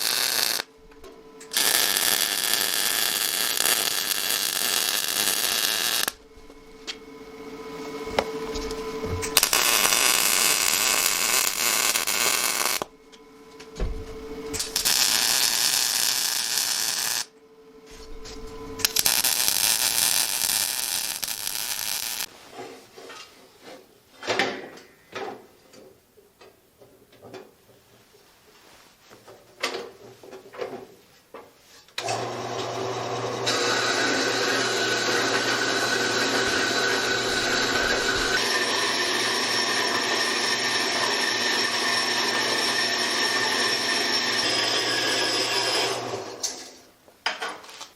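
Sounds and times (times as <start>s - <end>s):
welder arc crackling hiss: 0.0s - 0.7s, 1.4s - 6.2s, 9.2s - 12.9s, 14.5s - 17.3s, 18.8s - 22.3s.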